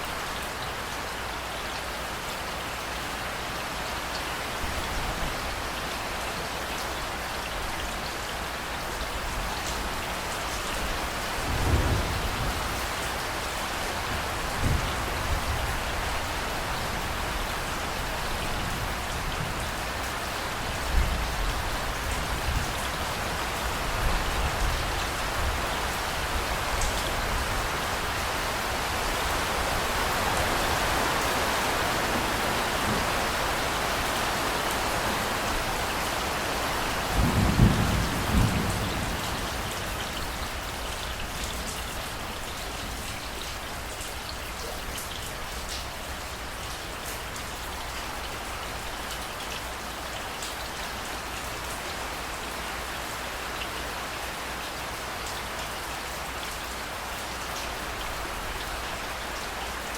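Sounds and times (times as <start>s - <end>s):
heavy rain pouring: 0.0s - 59.9s
thunder rumbling: 11.4s - 12.8s, 37.1s - 40.5s.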